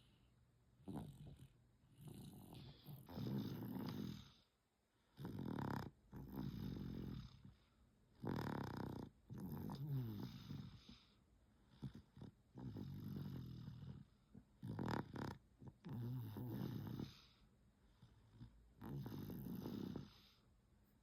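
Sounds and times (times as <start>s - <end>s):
baby snoring: 2.2s - 4.4s, 8.2s - 10.8s, 11.9s - 17.3s, 18.8s - 20.3s.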